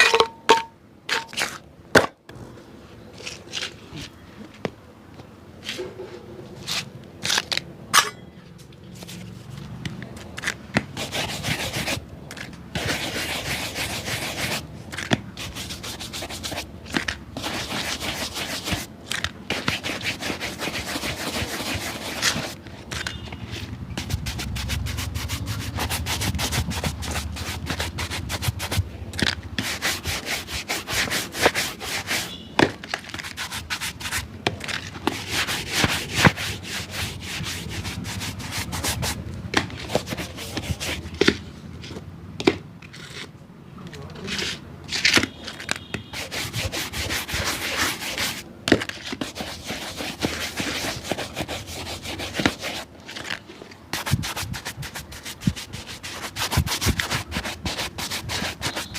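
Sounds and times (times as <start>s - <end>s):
brush scrubbing a shoe: 10.9s - 12.1s, 12.8s - 28.9s, 29.5s - 32.4s, 33.1s - 34.3s, 34.9s - 41.4s, 46.1s - 53.3s, 53.9s - 58.9s.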